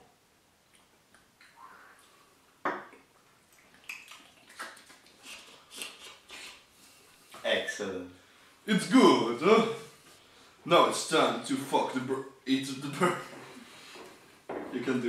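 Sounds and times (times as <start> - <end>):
liquid sounds from drinking: 3.4 - 6.7.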